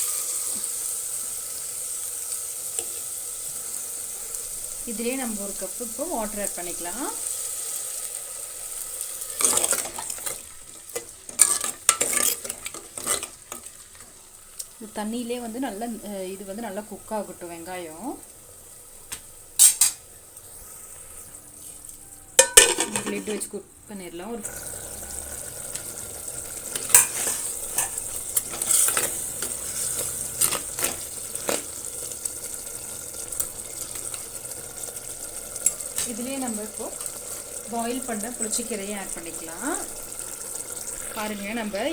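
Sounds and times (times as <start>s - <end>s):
water sizzling in hot pot: 0.0s - 41.9s
spoon knocking against pot: 22.4s - 23.2s
utensil clinking against pan: 22.4s - 23.4s.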